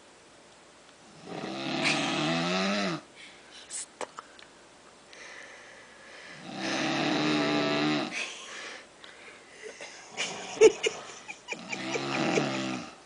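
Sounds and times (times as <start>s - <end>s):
person snoring: 1.2s - 3.0s, 6.4s - 8.2s, 11.6s - 13.0s
breathy breath: 5.1s - 6.5s.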